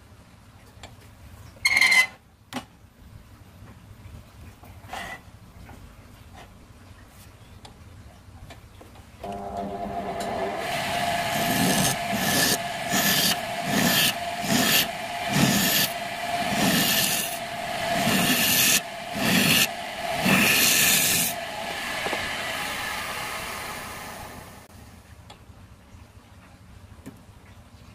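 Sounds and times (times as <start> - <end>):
tool scraping spinning wood: 9.2 - 24.7
wood lathe humming: 9.2 - 24.7.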